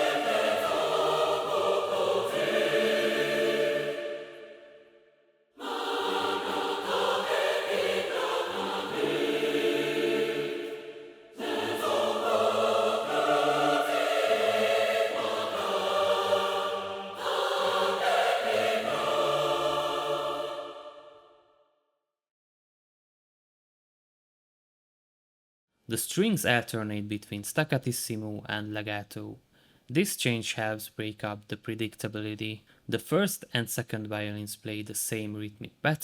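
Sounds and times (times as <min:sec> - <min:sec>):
mixed choir singing: 0:00.0 - 0:21.5
string section playing: 0:05.6 - 0:21.0.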